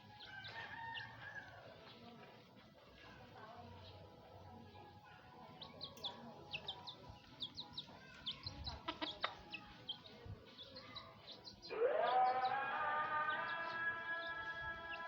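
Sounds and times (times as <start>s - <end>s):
bird chirping: 5.4s - 15.0s.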